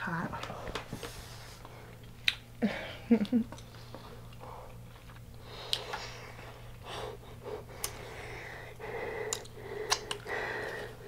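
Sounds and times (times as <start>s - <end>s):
person chewing: 3.2s - 6.6s, 7.4s - 8.1s, 9.1s - 10.7s
person breathing: 5.4s - 11.0s.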